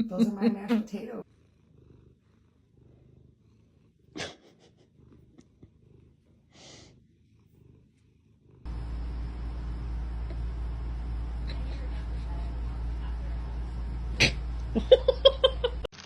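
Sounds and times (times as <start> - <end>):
cat purring: 1.2 - 15.9
loud steady low hum: 8.7 - 15.9.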